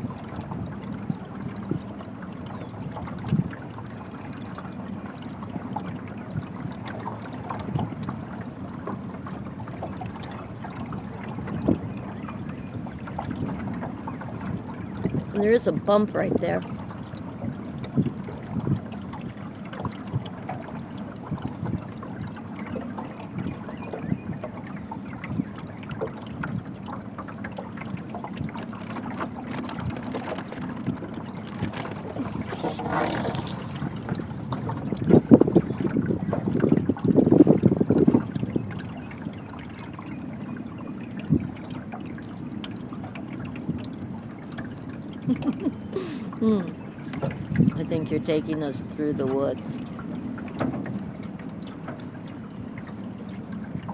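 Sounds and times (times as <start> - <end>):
water lapping against boat hull: 0.0 - 53.9
wind on microphone: 11.2 - 16.8, 17.4 - 20.4, 29.5 - 39.4, 45.3 - 49.8
splashes and knocks: 13.0 - 53.9.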